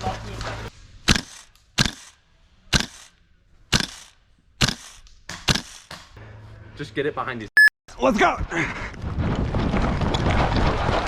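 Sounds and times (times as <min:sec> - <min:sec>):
airsoft gun shots: 0:01.1 - 0:03.1, 0:03.7 - 0:06.0.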